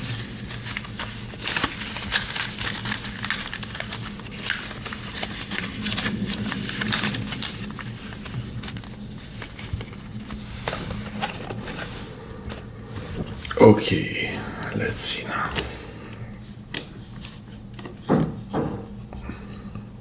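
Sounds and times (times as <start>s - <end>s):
paper and packaging rustling: 0.0s - 13.6s
steady low hum: 0.0s - 20.0s.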